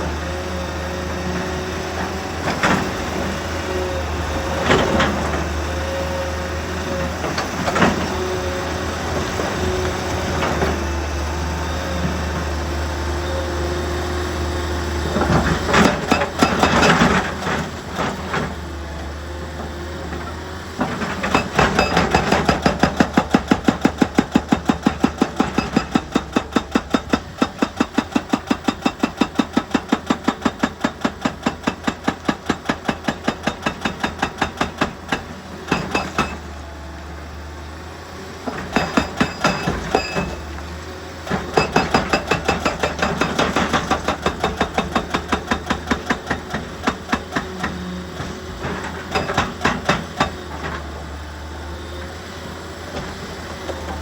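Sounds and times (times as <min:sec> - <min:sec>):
excavator hammering rock: 0:15.2 - 0:17.5, 0:21.2 - 0:36.4, 0:38.5 - 0:40.4, 0:41.3 - 0:50.5.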